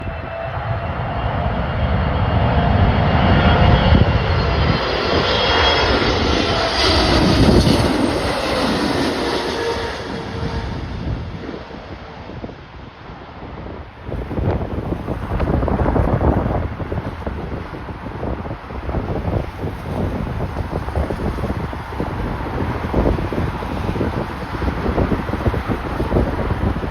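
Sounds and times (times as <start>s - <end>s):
jet airliner passing: 0.0s - 26.9s
wind buffeting microphone: 0.0s - 26.9s.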